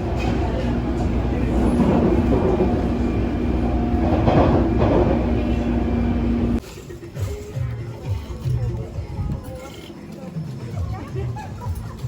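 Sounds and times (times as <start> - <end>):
train rumbling: 0.0 - 6.6.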